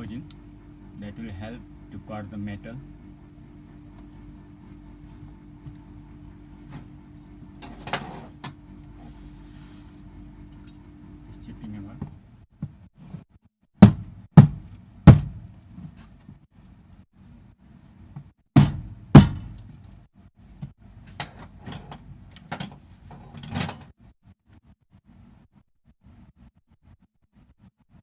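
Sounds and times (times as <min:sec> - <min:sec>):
hard knocks and thunks: 0:13.8 - 0:15.5, 0:18.6 - 0:19.6.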